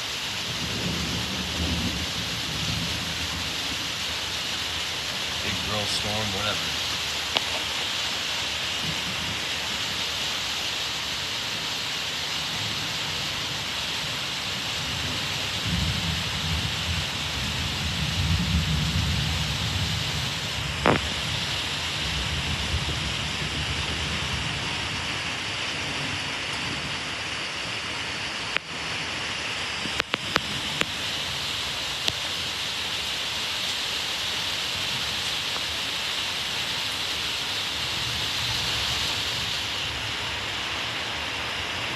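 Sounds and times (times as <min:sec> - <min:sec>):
steady rain falling: 0:00.0 - 0:41.9
rumble of thunder: 0:00.4 - 0:03.9, 0:14.8 - 0:21.4, 0:22.0 - 0:27.1.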